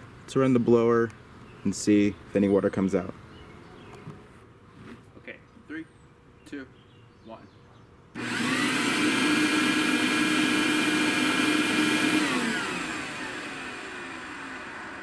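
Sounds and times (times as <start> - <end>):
blower whining: 8.2 - 15.0.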